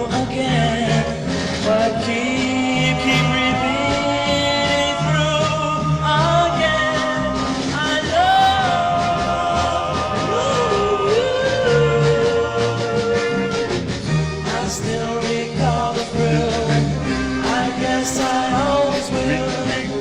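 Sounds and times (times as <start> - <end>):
band with repeating bass line: 0.0 - 20.0
vocal group holding wavering notes: 0.0 - 20.0.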